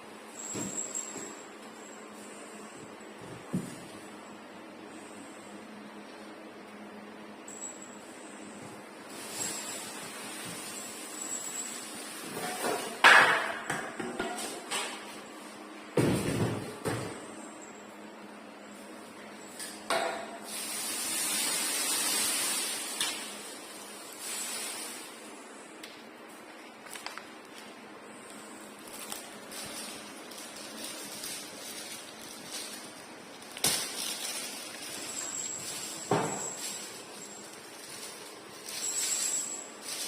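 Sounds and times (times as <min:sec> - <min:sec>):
packaging hissing rustle: 0:20.5 - 0:25.3, 0:28.8 - 0:40.0.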